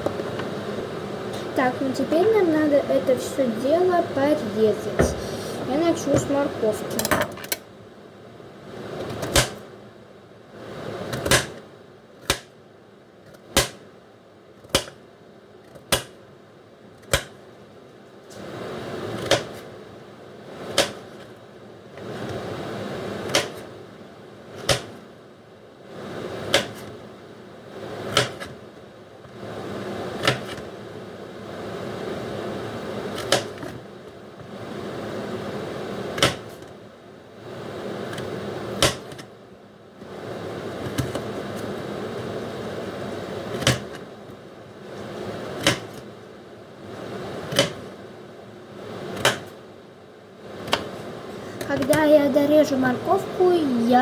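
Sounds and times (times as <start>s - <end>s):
knife knocking on cutting board: 5.0s - 5.4s.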